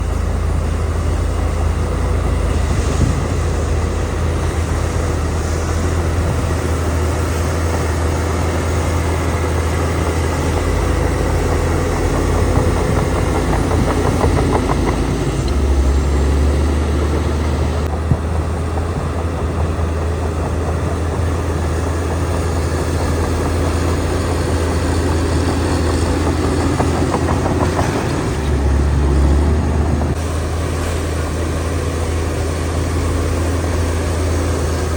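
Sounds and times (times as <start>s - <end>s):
diesel engines rumbling: 0.0s - 34.9s.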